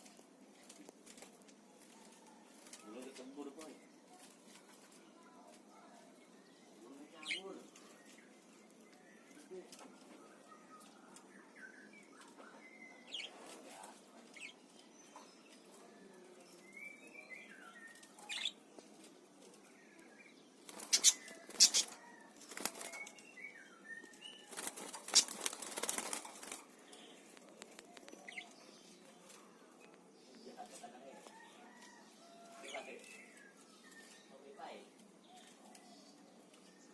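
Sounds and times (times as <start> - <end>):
parakeets chirping faintly: 0.0 - 36.9
wing flapping: 20.6 - 23.2, 24.4 - 26.8.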